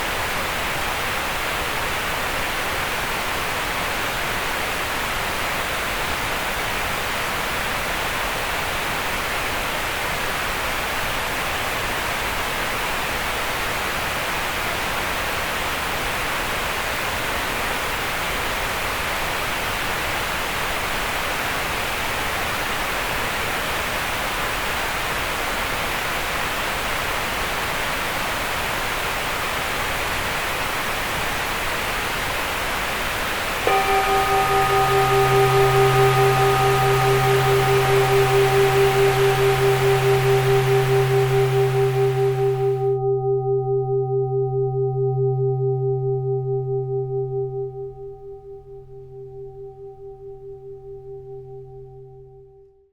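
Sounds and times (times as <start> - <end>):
steady mid-range hiss: 0.0 - 42.9
low hum: 33.7 - 52.8
sustained tones with overtones: 33.7 - 52.8.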